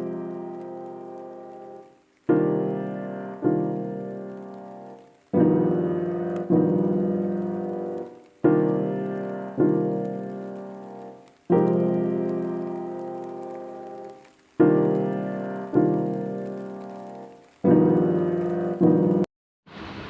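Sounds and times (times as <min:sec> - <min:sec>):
slow piano chords from small speaker: 0:00.0 - 0:19.3.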